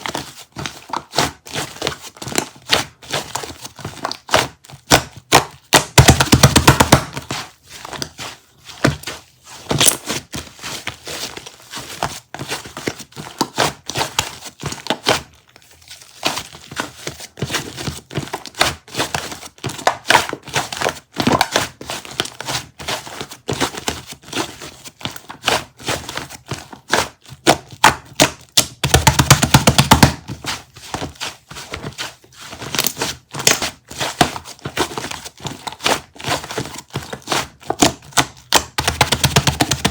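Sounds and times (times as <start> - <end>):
quick sharp taps and clicks: 5.7 - 7.2, 28.6 - 30.2, 38.5 - 39.9
crinkling and rustling: 7.0 - 39.9.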